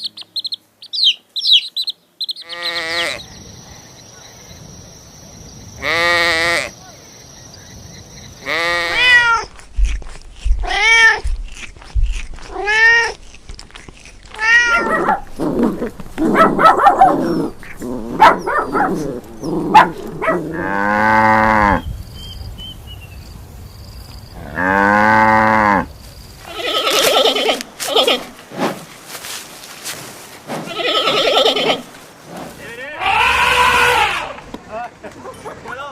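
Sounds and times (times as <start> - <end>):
animal calls: 10.6 - 21.9, 26.4 - 28.4, 30.7 - 31.9.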